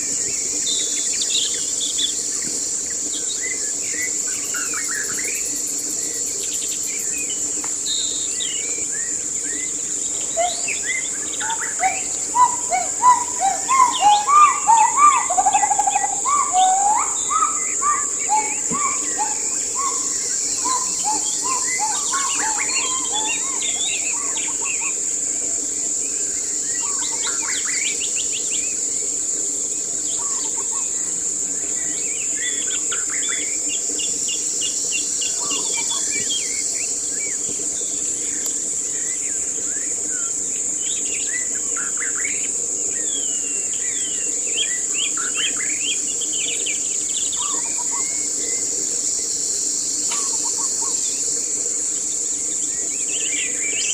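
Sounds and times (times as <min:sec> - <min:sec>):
high-pitched insect drone: 0:00.0 - 0:53.9
birds chirping and singing: 0:09.5 - 0:24.8.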